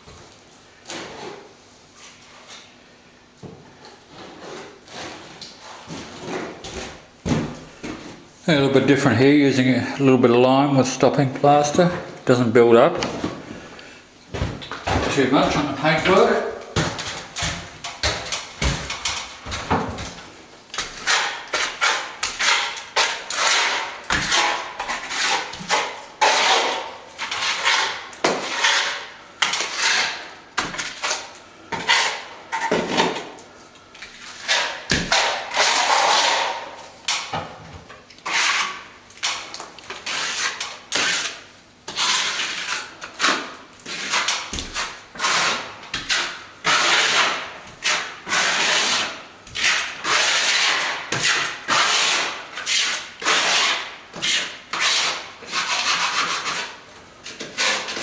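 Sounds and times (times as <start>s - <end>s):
trowel scraping plaster: 4.1s - 7.0s, 20.8s - 33.4s, 34.0s - 37.3s, 38.2s - 58.0s.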